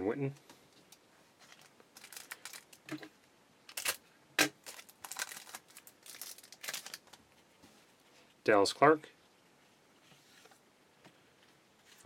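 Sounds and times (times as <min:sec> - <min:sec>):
plastic packaging crinkling: 0:00.9 - 0:03.0, 0:03.7 - 0:07.4.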